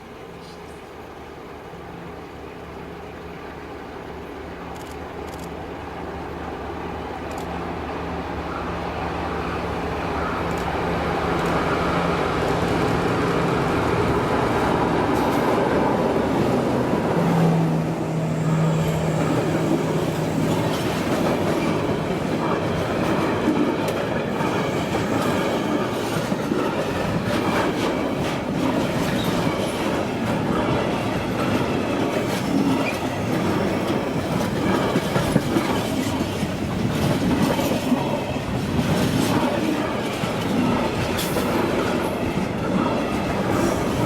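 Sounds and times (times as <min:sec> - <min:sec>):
diesel locomotive engine drone: 0:00.0 - 0:44.0
freight wagons clattering on rails: 0:20.4 - 0:44.0.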